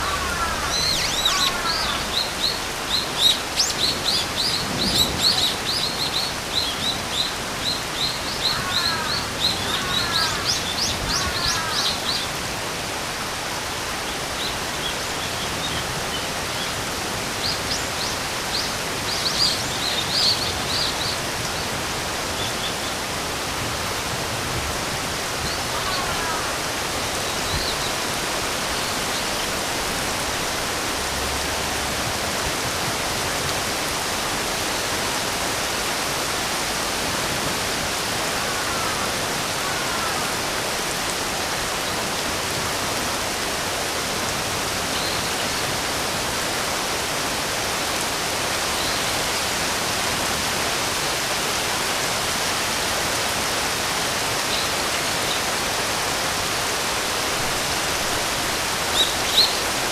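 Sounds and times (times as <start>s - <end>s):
short falling bird calls: 0.0s - 5.9s
birds chirping: 0.0s - 12.3s
steady rain hiss: 0.0s - 59.9s.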